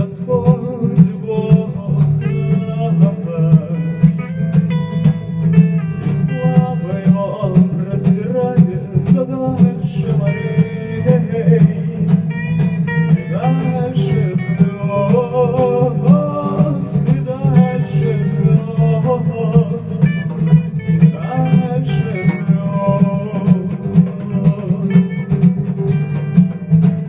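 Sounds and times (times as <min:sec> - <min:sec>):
low accompaniment: 0:00.0 - 0:27.0
strummed acoustic guitar: 0:00.0 - 0:27.0.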